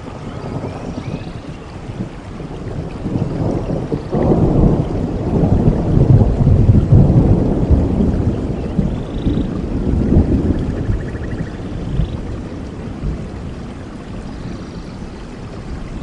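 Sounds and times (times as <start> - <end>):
low rumble of thunder: 0.0 - 16.0
rain falling in a forest: 0.0 - 16.0.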